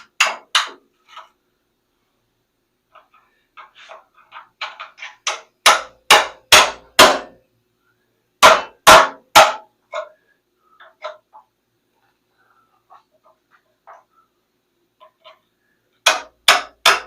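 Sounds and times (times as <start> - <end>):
hammer striking steel frame: 4.7 - 7.4, 8.4 - 10.1, 16.0 - 17.0.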